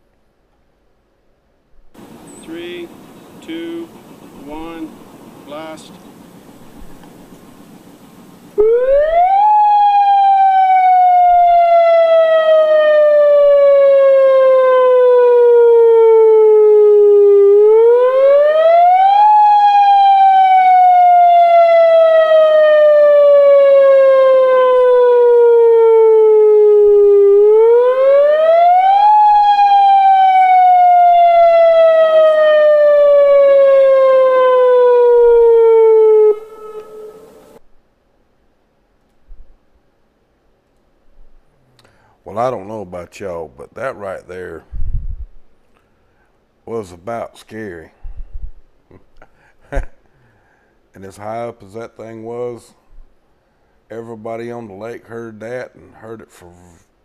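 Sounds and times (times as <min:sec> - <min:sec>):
warning siren wailing: 0:08.6 - 0:37.6.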